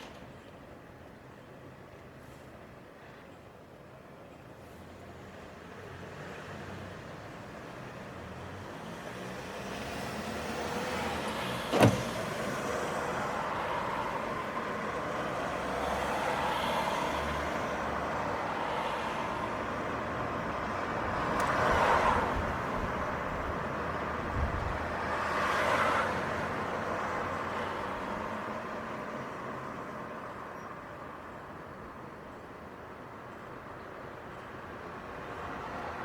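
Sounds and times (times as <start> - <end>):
cars driving past: 5.7 - 29.8.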